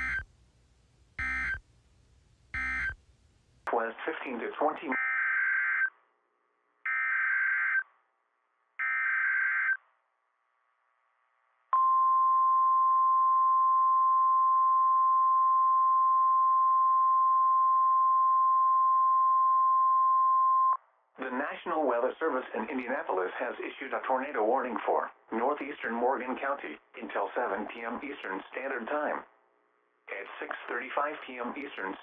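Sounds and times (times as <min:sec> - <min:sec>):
steady warning alarm tone: 0:00.0 - 0:00.2, 0:01.2 - 0:01.6, 0:02.6 - 0:03.0.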